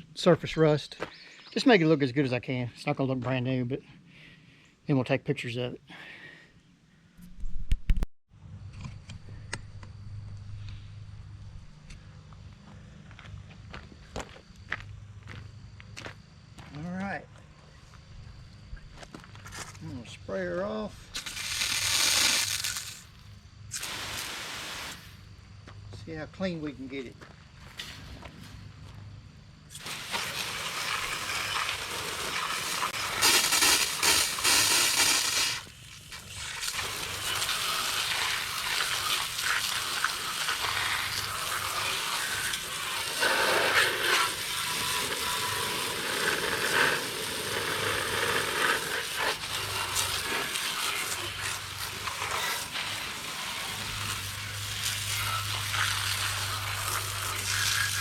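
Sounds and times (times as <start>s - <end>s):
hose nozzle spraying water on metal: 21.2s - 23.1s, 23.7s - 25.0s, 29.7s - 58.0s.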